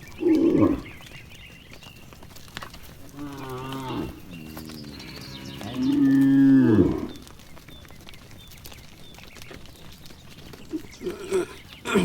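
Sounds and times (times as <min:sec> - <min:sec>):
cattle mooing: 0:00.2 - 0:00.9, 0:03.1 - 0:07.3.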